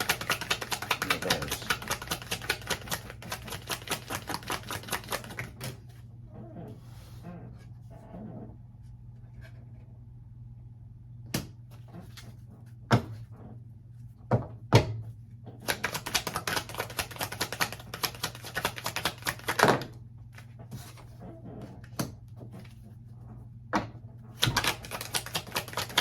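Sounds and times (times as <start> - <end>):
deck of cards shuffling: 0.0 - 5.7, 15.7 - 19.6, 24.4 - 26.0
cards tapping: 0.0 - 5.8, 15.7 - 19.8, 24.4 - 26.0.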